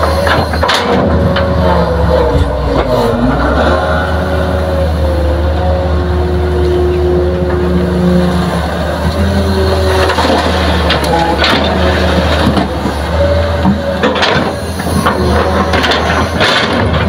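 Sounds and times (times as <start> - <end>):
excavator diesel engine droning: 0.0 - 17.0
knocks and clatters: 13.6 - 17.0.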